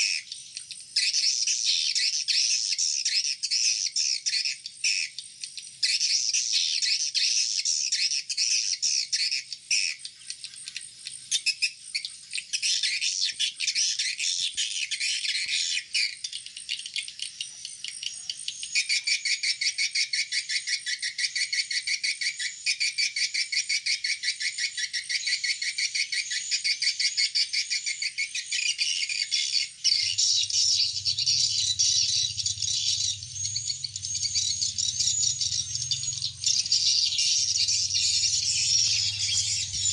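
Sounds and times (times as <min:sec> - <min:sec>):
high-pitched bird chirping: 0:00.0 - 0:39.9.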